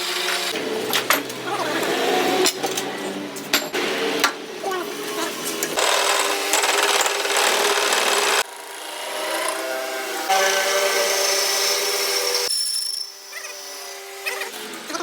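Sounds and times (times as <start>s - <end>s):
power tool grinding metal: 0.0s - 3.2s, 3.8s - 15.0s.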